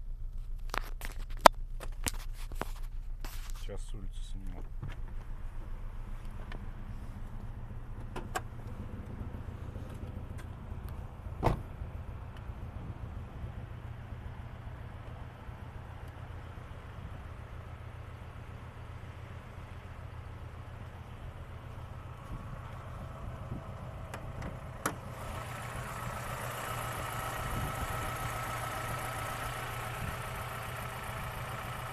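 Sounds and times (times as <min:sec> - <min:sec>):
car engine idling: 0:01.6 - 0:31.9
loud thump: 0:11.4 - 0:11.8.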